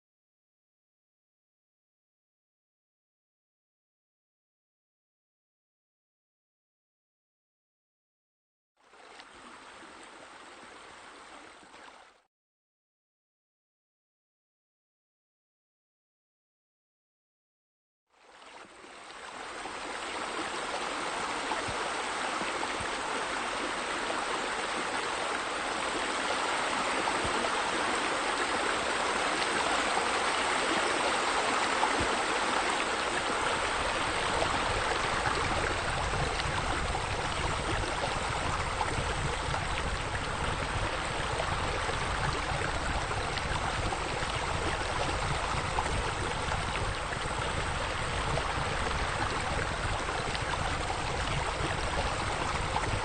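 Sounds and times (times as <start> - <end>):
water splashing rush: 19.0 - 53.0.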